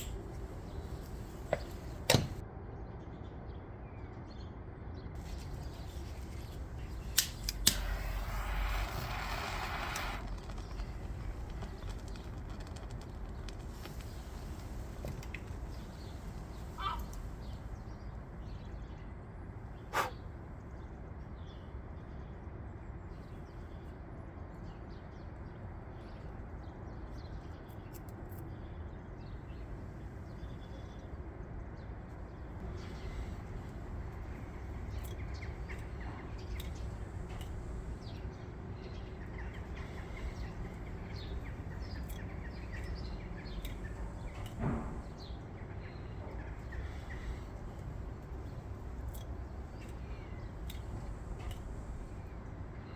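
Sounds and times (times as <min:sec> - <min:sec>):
outdoor background noise: 0:00.0 - 0:52.9
faint bird chirps: 0:05.2 - 0:20.4, 0:32.2 - 0:52.9.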